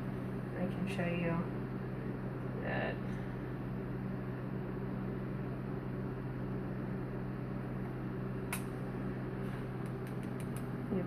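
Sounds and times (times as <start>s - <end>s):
low electrical hum: 0.0s - 11.0s
sharp click: 8.5s - 8.7s, 9.8s - 10.7s.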